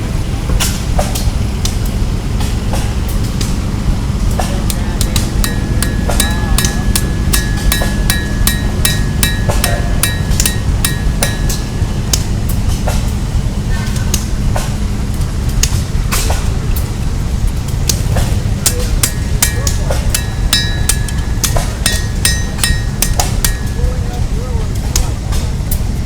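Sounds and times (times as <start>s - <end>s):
steady low rumble: 0.0s - 26.0s
hammer striking metal on anvil: 4.4s - 13.1s, 17.9s - 25.1s.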